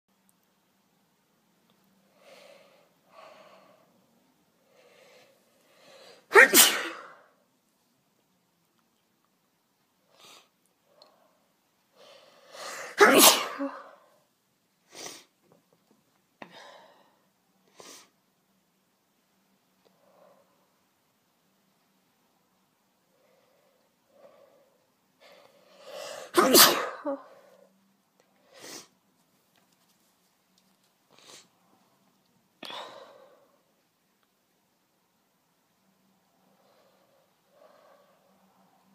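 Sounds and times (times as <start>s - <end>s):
sharp breath: 4.6s - 6.3s, 23.2s - 26.4s, 36.4s - 38.5s
woman sneezing: 6.3s - 7.3s, 12.6s - 14.0s, 26.0s - 27.4s.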